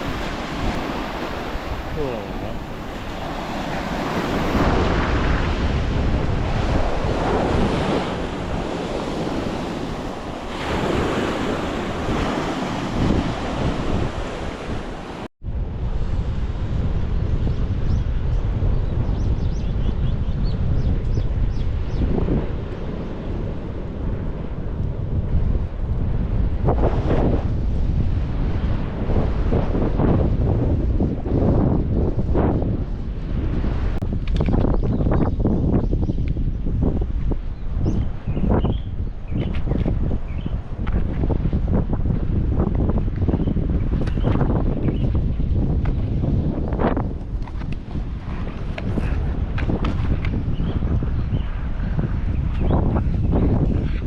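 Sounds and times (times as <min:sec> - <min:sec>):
strong wind buffeting microphone: 0:00.0 - 0:54.0.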